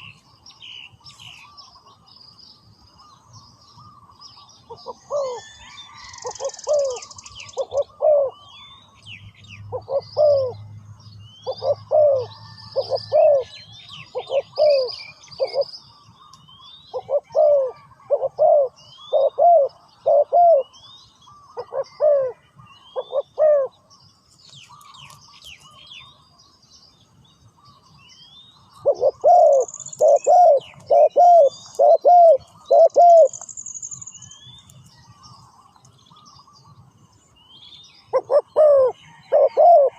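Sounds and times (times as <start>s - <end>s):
small birds chirping: 0.0s - 39.9s
dove cooing: 4.7s - 8.5s, 9.7s - 10.6s, 11.4s - 15.7s, 16.9s - 20.9s, 21.5s - 22.4s, 23.0s - 23.8s, 28.7s - 33.4s, 38.1s - 39.9s.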